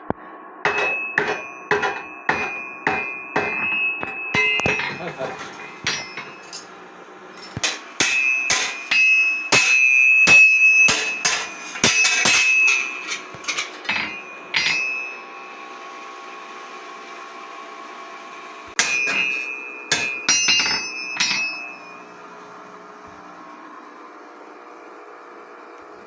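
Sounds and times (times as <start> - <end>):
steady hum: 0.0 - 24.3
hammer striking iron on anvil: 0.7 - 6.8, 7.4 - 15.7, 18.7 - 22.2.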